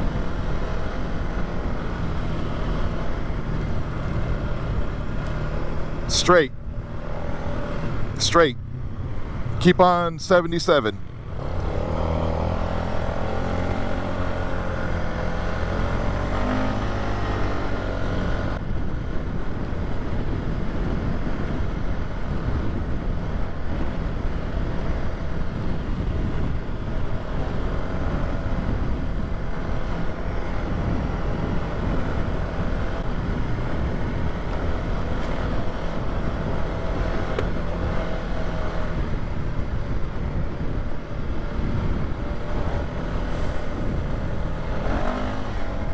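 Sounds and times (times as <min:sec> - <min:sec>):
atv engine running: 0:00.0 - 0:45.9
rushing noise: 0:43.1 - 0:45.9.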